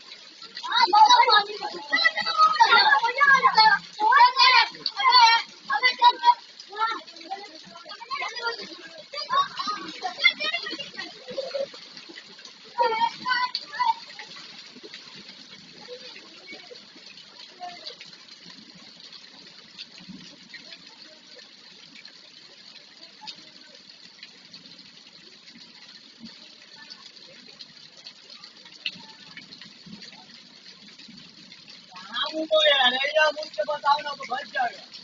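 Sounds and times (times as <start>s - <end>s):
steady rain falling: 0.0s - 35.0s.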